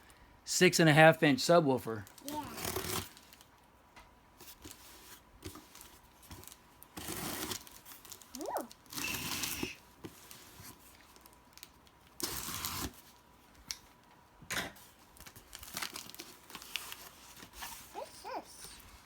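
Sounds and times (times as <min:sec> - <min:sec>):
cardboard packaging tearing: 0:02.1 - 0:03.4, 0:06.4 - 0:13.2, 0:15.2 - 0:18.4.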